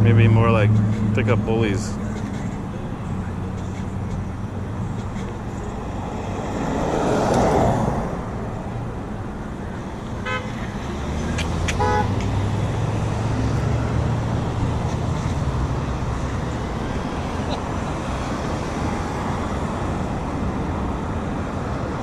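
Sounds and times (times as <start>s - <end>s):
car passing: 0.0s - 22.0s
road traffic rumble: 0.0s - 22.0s
car horn toots: 10.2s - 10.6s, 11.8s - 12.2s.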